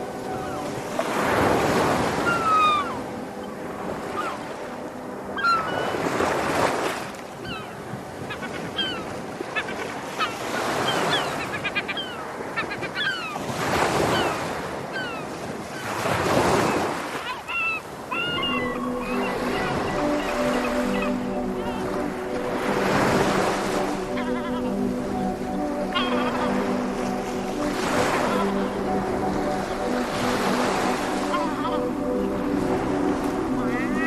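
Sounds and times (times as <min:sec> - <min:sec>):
sea waves washing ashore: 0:00.0 - 0:34.0
seagulls crying: 0:00.0 - 0:34.0.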